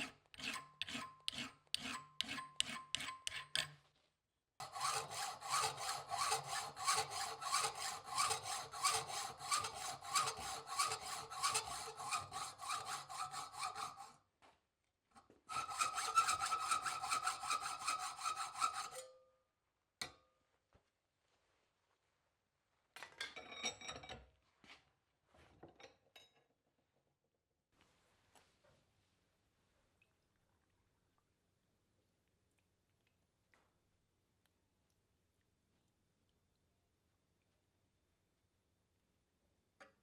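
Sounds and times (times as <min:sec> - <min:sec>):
file scraping steel blade: 0:00.0 - 0:03.8, 0:04.6 - 0:14.2, 0:15.5 - 0:19.2.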